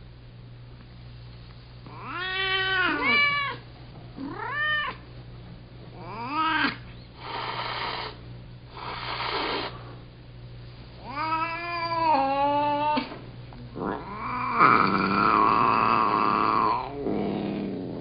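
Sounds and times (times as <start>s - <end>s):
cat hissing: 1.9s - 3.6s, 6.0s - 9.9s, 13.8s - 18.0s
cats yowling: 1.9s - 5.1s, 6.0s - 7.0s, 11.0s - 13.2s, 13.8s - 18.0s.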